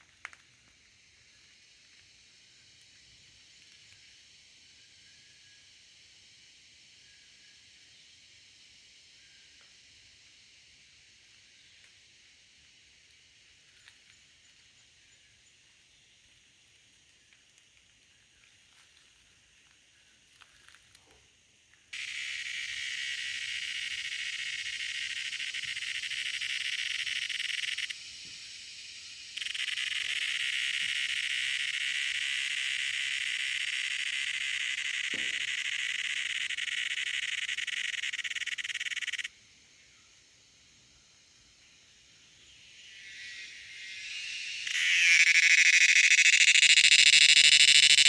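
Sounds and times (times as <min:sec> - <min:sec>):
cicada buzzing: 0:21.9 - 0:39.7, 0:40.4 - 0:48.0.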